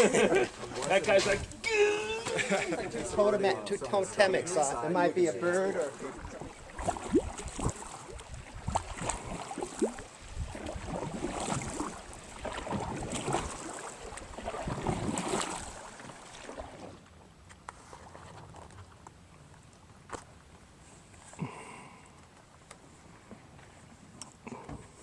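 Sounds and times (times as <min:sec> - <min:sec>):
paddle splashing in water: 0:05.8 - 0:17.2.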